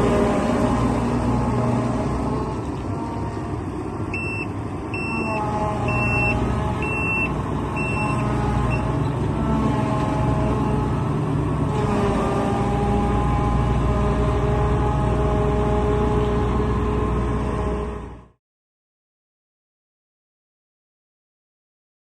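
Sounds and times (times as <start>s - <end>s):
combine harvester engine running: 0.0s - 18.4s
high electronic warning beeps: 4.2s - 8.9s.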